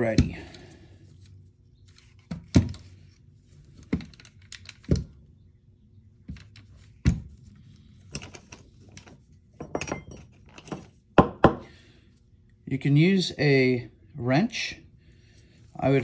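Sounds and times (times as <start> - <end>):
rifle parts clicking and knocking: 3.7 - 5.2, 8.0 - 11.7.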